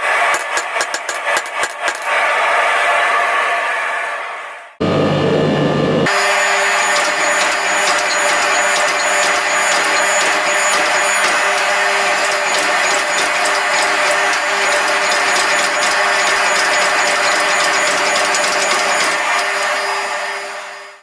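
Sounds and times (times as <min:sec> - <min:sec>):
machine ticking rattle: 0:07.0 - 0:19.4.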